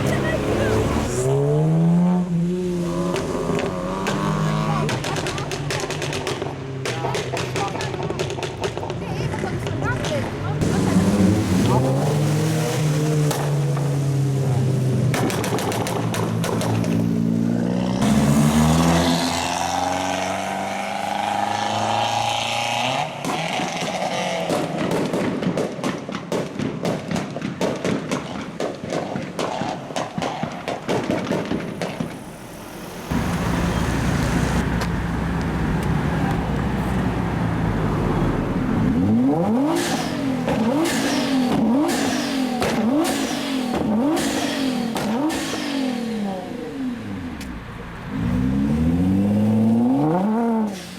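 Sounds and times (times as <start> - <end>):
car engines revving: 0.0 - 25.5, 29.3 - 50.9
exhaust pops and crackles: 3.1 - 11.1, 13.2 - 17.3, 23.2 - 32.5.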